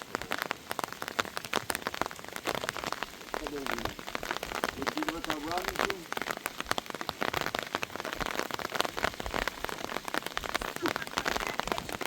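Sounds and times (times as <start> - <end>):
heavy rain falling: 0.0 - 12.0.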